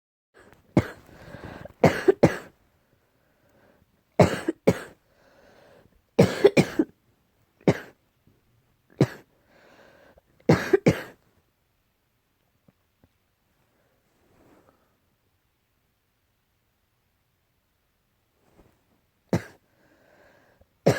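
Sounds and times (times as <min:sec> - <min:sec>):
faint breaths: 0:00.4 - 0:01.8, 0:02.7 - 0:04.0, 0:05.0 - 0:06.0, 0:09.3 - 0:10.3, 0:19.6 - 0:20.7
person coughing: 0:00.8 - 0:02.5, 0:04.2 - 0:05.0, 0:06.2 - 0:06.9, 0:07.7 - 0:08.0, 0:09.0 - 0:09.3, 0:10.5 - 0:11.2, 0:19.4 - 0:19.6.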